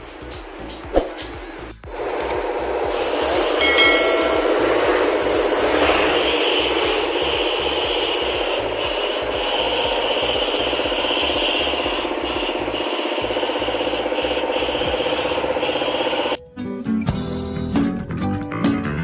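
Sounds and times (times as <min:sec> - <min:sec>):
rough rubbing or scraping: 0:02.0 - 0:16.4.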